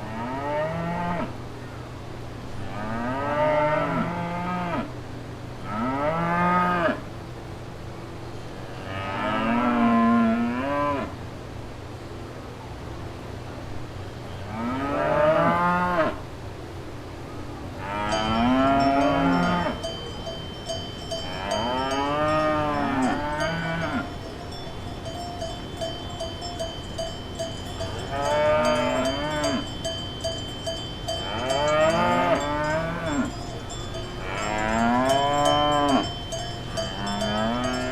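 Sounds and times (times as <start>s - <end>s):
cows mooing: 17.8s - 37.9s
high ringing tone with tinkling: 18.1s - 37.9s.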